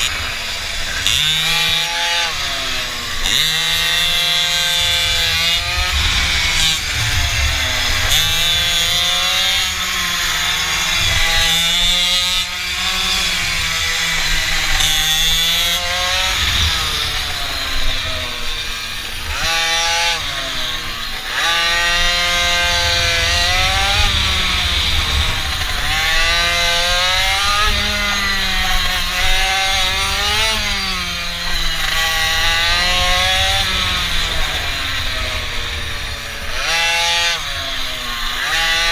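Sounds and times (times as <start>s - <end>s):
small engine revving: 0.0s - 38.9s
wind rumbling on microphone: 0.0s - 38.9s.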